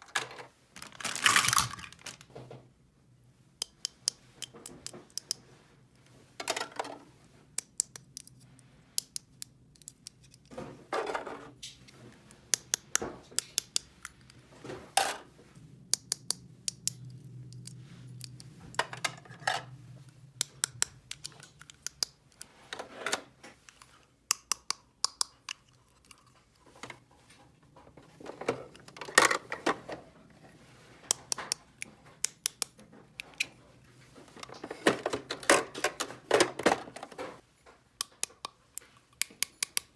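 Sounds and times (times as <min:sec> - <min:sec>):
plastic toy pieces clicking: 0:07.6 - 0:08.4, 0:12.5 - 0:14.3, 0:20.4 - 0:22.5, 0:24.3 - 0:26.2, 0:39.2 - 0:39.9.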